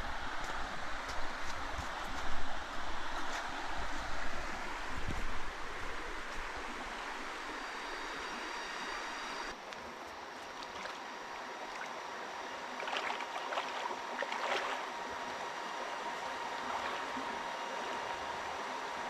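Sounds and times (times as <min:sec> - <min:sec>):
rushing water: 0:10.5 - 0:15.0, 0:16.6 - 0:17.5.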